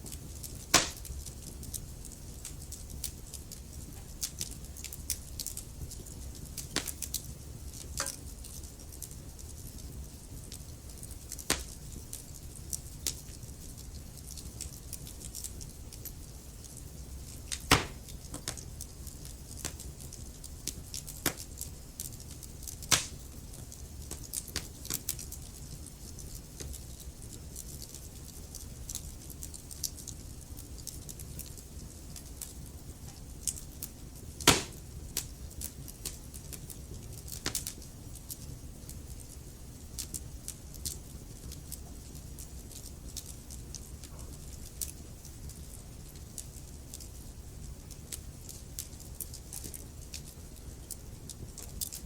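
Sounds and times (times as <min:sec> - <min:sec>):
sharp pops of burning wood: 0:00.0 - 0:01.8, 0:06.6 - 0:08.3, 0:11.4 - 0:12.0, 0:16.6 - 0:18.6, 0:20.6 - 0:21.5, 0:22.8 - 0:23.4, 0:24.0 - 0:25.1, 0:34.4 - 0:36.7
low steady fire rumble: 0:00.0 - 0:52.0
wood fire crackling: 0:00.0 - 0:52.0.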